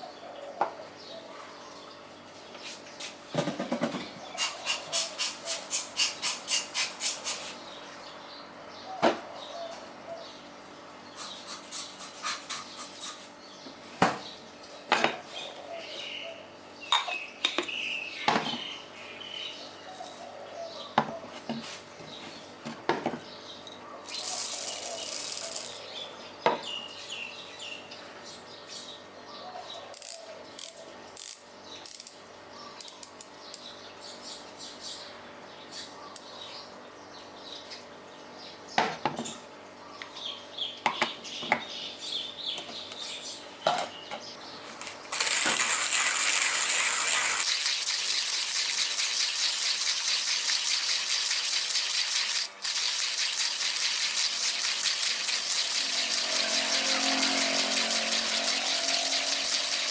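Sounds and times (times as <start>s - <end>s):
rhythmic scraping strokes: 47.4s - 59.9s.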